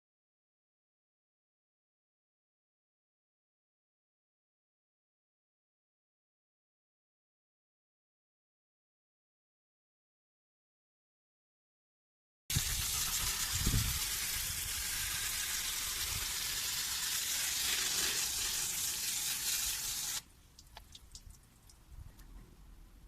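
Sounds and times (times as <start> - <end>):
water jet spraying: 12.5 - 20.3.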